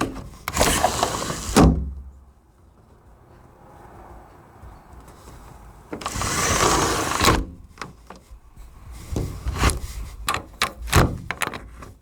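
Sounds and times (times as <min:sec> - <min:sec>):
window sliding along track: 0:00.0 - 0:02.0, 0:05.9 - 0:07.6, 0:09.0 - 0:10.0
latch clicks and knocks: 0:10.3 - 0:12.0.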